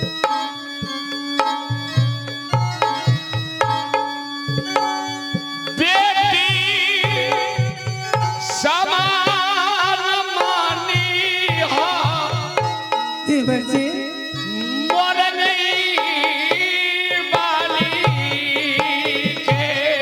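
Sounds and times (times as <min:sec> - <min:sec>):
steady held tones: 0:00.2 - 0:16.5
melody with heavy vibrato: 0:11.0 - 0:16.0.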